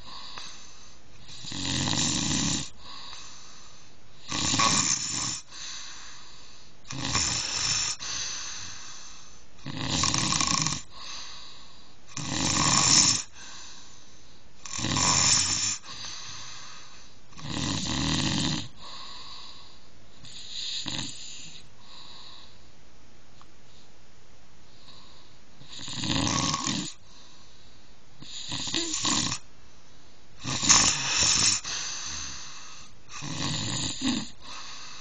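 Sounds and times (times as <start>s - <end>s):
snoring: 0.0s - 3.4s, 4.2s - 5.9s, 6.9s - 13.7s, 14.6s - 22.5s, 24.8s - 27.0s, 28.2s - 29.5s, 30.4s - 35.0s.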